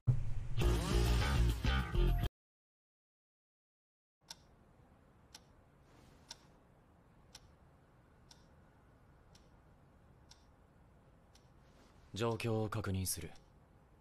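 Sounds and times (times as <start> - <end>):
clock ticking: 4.2 - 4.6, 5.2 - 5.6, 6.3 - 6.6, 7.2 - 8.6, 9.2 - 10.6, 11.2 - 11.6, 12.2 - 13.6.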